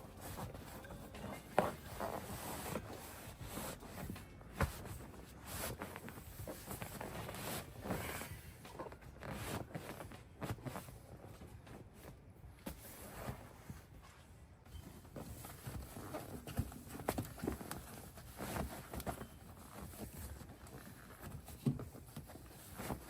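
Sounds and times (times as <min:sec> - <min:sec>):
seat cover rustling: 0:00.0 - 0:14.0, 0:14.8 - 0:23.0.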